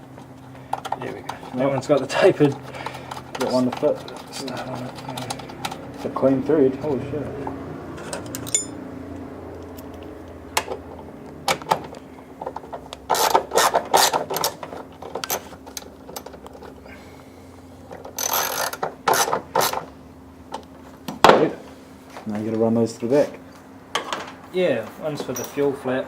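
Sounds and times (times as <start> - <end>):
steady low hum: 0.0 - 26.0
ratchet wrench clicking: 13.1 - 14.6, 18.2 - 19.8.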